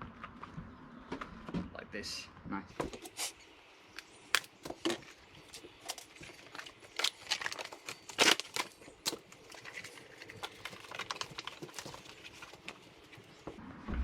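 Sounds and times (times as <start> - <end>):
rubber tyres rustling and creaking: 4.0 - 14.0.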